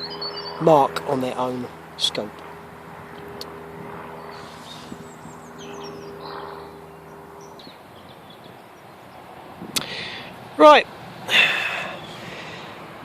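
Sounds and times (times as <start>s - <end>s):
bird chirps: 0.0s - 0.6s, 4.1s - 9.2s, 11.9s - 12.3s
steady low hum: 0.0s - 13.0s.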